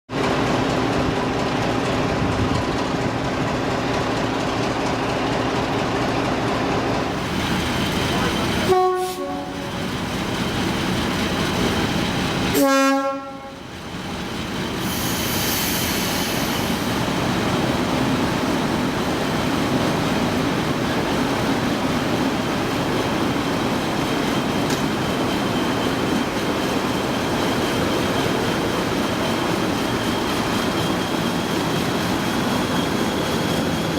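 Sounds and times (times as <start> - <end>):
diesel locomotive running: 0.1 - 33.9
locomotive horn blasts: 8.6 - 9.7, 12.5 - 13.6.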